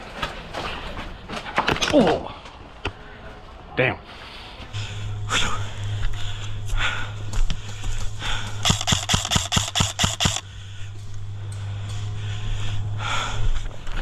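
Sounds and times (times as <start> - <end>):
steady low hum: 2.3 - 14.0
scattered clicks: 8.4 - 10.4
airsoft gun shots: 8.6 - 10.4.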